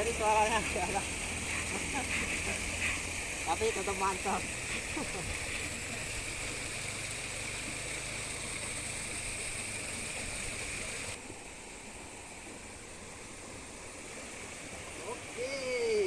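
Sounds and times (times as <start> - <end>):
waterfall rushing: 0.0 - 11.2.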